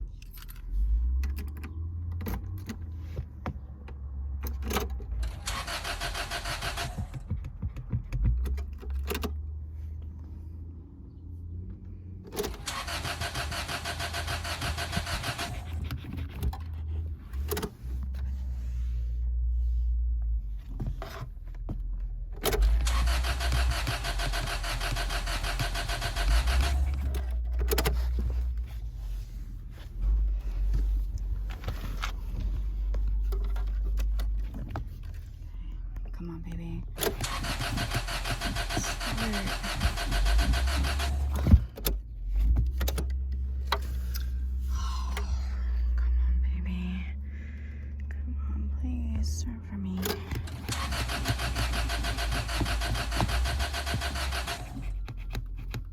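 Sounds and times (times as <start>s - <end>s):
car engine cranking: 0.0s - 19.0s, 20.6s - 45.9s, 49.9s - 55.9s
starter clicks: 12.2s - 16.7s, 22.4s - 28.6s, 36.9s - 44.3s, 50.0s - 55.9s.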